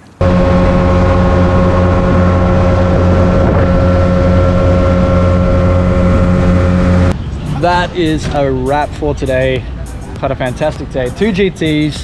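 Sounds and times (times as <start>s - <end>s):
motorboat engine running: 0.2s - 7.1s.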